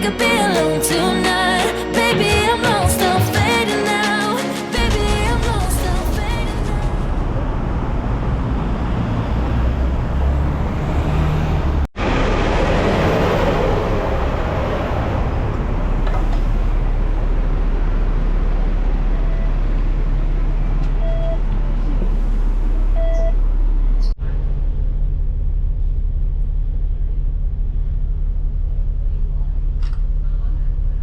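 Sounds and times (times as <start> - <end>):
road traffic rumble: 4.4 - 31.0
short electronic beeps: 23.0 - 23.4.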